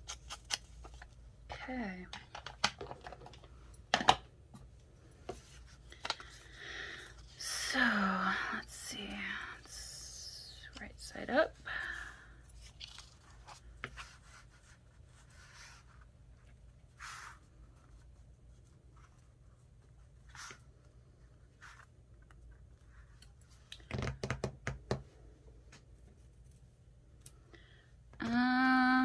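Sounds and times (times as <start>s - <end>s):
paper rubbing and brushing: 13.3s - 20.7s.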